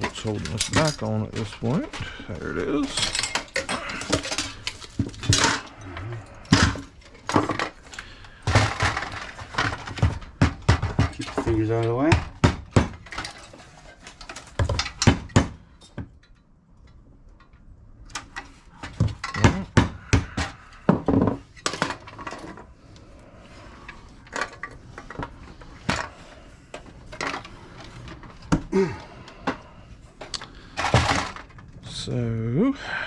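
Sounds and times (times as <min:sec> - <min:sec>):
metallic clanks of scrap metal: 0:00.0 - 0:02.1, 0:02.8 - 0:07.8.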